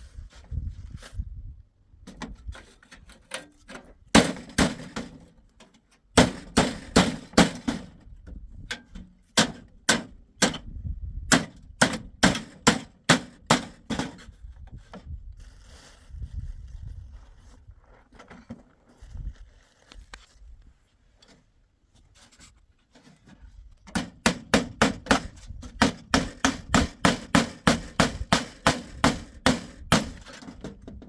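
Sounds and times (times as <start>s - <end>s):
hammer striking wood: 4.1s - 5.1s, 6.2s - 7.9s, 9.4s - 10.6s, 11.3s - 14.2s, 23.9s - 30.3s.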